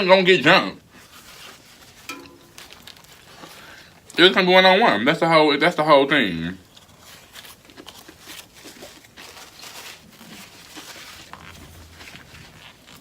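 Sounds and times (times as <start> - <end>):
person chewing food: 6.6 - 13.0
wet mouth clicks and crunches: 6.8 - 9.6.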